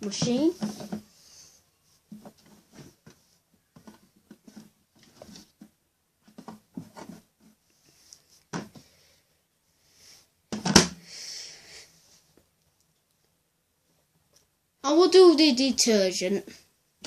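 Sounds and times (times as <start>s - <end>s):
rustling: 0.0s - 9.0s.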